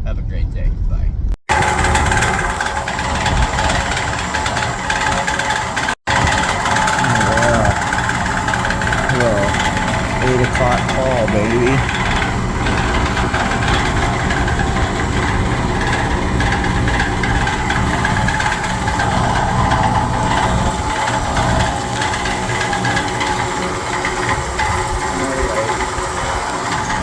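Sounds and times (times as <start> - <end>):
vehicle engine running: 1.5 - 27.0.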